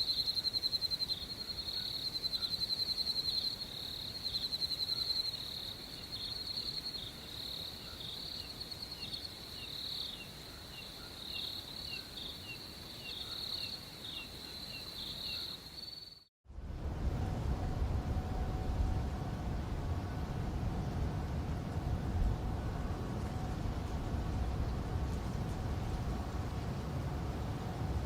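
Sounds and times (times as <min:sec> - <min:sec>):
crickets chirping in trills: 0:00.0 - 0:16.3
low rumbling noise: 0:16.5 - 0:28.0.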